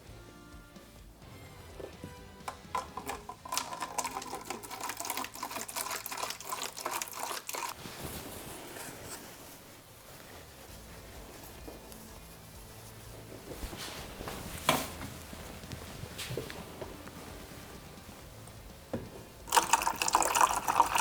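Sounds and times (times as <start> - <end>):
water pouring and glugging: 2.5 - 8.3, 19.4 - 21.0.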